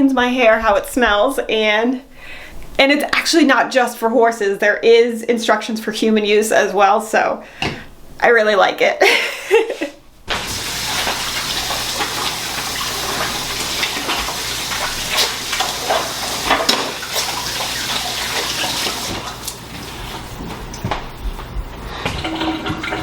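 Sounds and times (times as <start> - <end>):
water running from a tap: 10.3 - 20.8.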